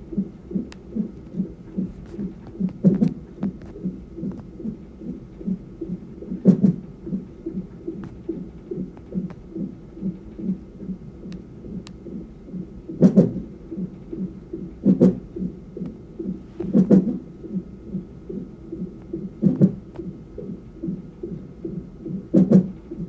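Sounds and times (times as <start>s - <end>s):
fast fetal heartbeat: 0.0s - 23.0s.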